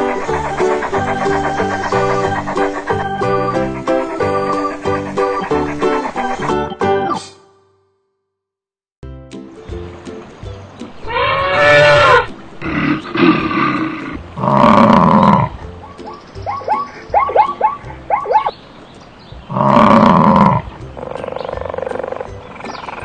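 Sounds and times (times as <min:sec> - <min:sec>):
wild animal roars: 0:11.1 - 0:15.6, 0:19.5 - 0:23.0.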